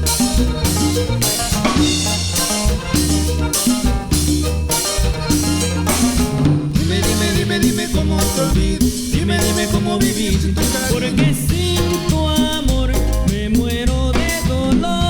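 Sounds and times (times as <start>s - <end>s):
instrumental melody: 0.0s - 10.0s
drum kit steady beat: 0.0s - 15.0s
held bass notes: 0.0s - 15.0s.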